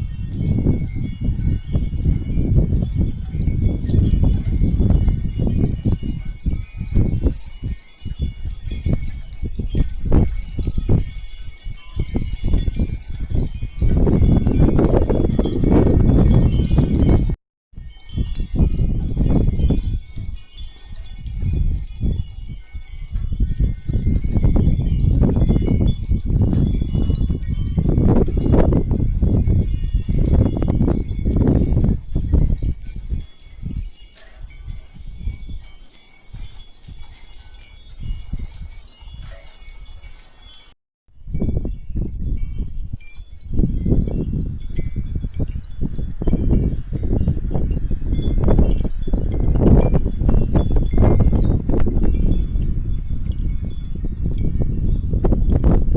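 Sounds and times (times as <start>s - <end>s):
chimes tinkling: 0.0s - 55.9s
gusty wind buffeting microphone: 0.0s - 55.9s.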